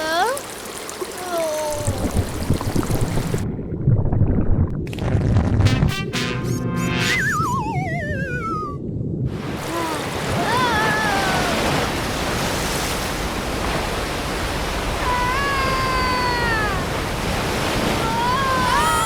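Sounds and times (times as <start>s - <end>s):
falling warbling whistle: 6.4s - 9.0s.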